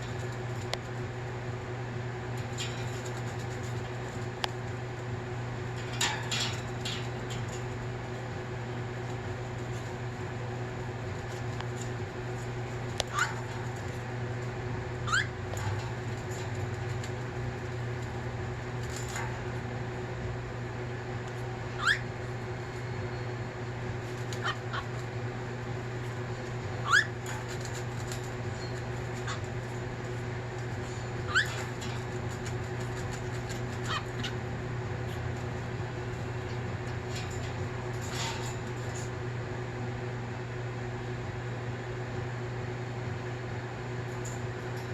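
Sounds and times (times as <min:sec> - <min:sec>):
steady low hum: 0:00.0 - 0:44.9
cockatiel chirps: 0:15.0 - 0:15.3, 0:21.8 - 0:22.0, 0:26.8 - 0:27.1, 0:31.3 - 0:31.6.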